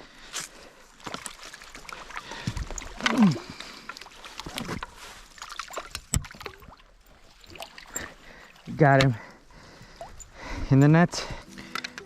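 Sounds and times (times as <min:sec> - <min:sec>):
water splashing and knocking: 0:01.0 - 0:08.1.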